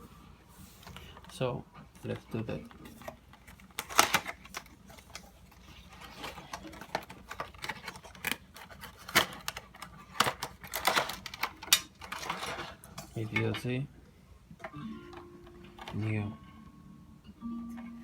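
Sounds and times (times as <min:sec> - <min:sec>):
packaging rustling and scraping: 0:00.0 - 0:13.8
packaging clicks and taps: 0:06.0 - 0:12.7.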